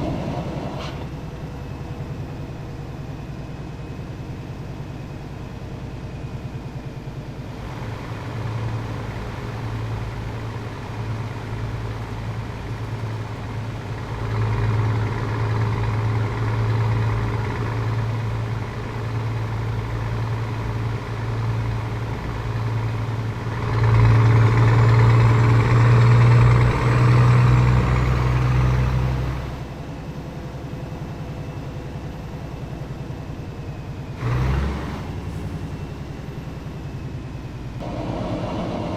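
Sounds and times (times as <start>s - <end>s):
truck diesel engine rumble: 0.0s - 38.9s.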